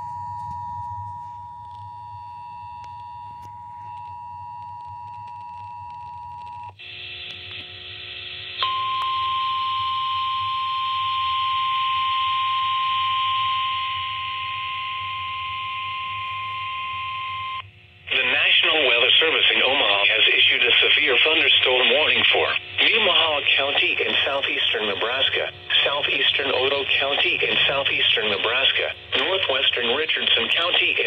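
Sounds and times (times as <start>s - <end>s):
steady warning alarm tone: 0.0s - 7.3s, 8.0s - 31.0s
radio hiss: 18.1s - 31.0s.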